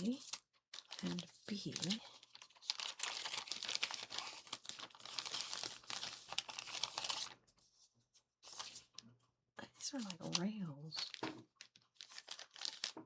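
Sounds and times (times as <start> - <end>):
packaging crinkling: 0.0 - 7.4, 10.0 - 13.0.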